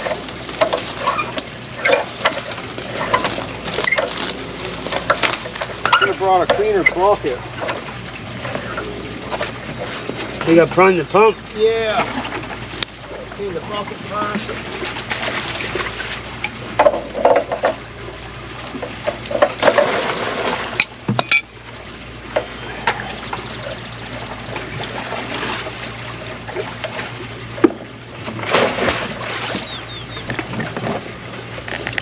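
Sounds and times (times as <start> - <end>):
bucket clinks and knocks: 0.0 - 7.8
water sloshing in a bucket: 0.0 - 32.0.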